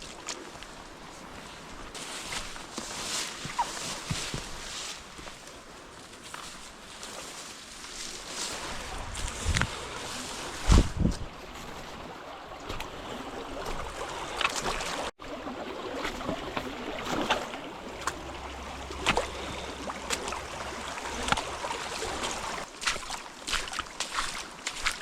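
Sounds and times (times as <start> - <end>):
footsteps crunching through leaf litter: 0.0 - 12.0, 17.0 - 25.0.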